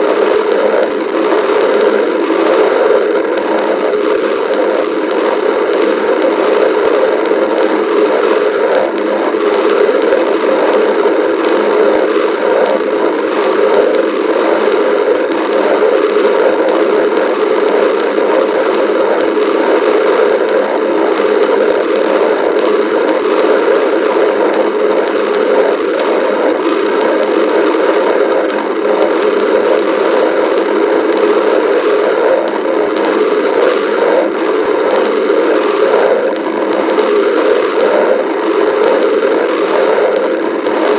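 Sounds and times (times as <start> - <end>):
stomach crackling rush: 0.0 - 40.9.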